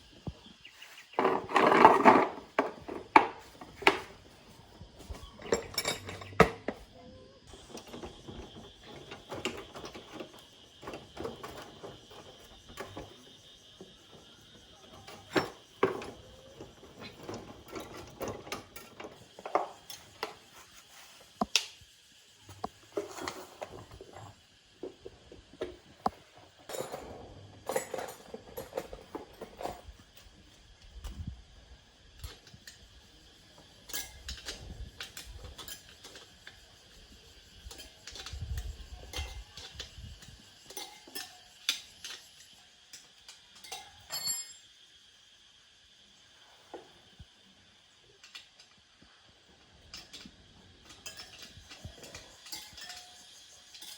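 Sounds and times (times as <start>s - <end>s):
metal tools clinking: 0.7s - 6.9s, 14.8s - 21.2s, 26.4s - 30.3s, 37.6s - 44.7s, 49.9s - 53.9s.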